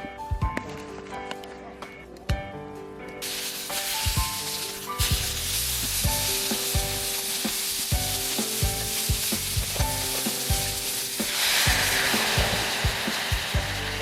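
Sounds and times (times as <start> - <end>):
background music with a beat: 0.0 - 0.9, 1.8 - 14.0
food sizzling in a pan: 3.2 - 14.0.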